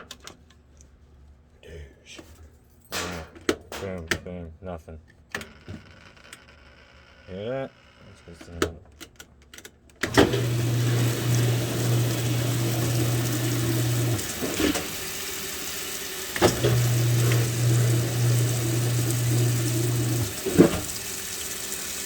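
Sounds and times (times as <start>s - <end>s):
low electrical hum: 0.0s - 14.3s
running water: 10.2s - 22.0s.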